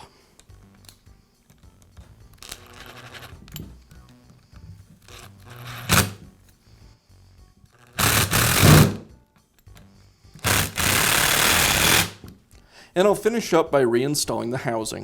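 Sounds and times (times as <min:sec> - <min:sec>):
power driver spinning screws: 0:05.1 - 0:06.2, 0:07.8 - 0:09.1, 0:10.4 - 0:12.2.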